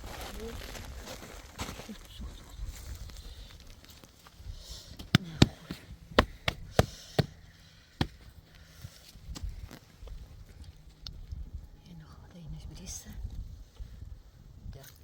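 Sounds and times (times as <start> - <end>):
sharp knocks: 5.0 - 7.4.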